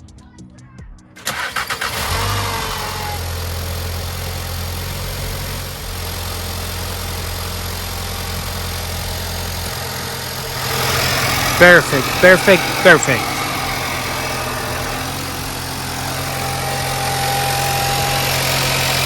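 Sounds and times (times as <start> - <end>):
car engine starting and idling: 1.2 - 19.0.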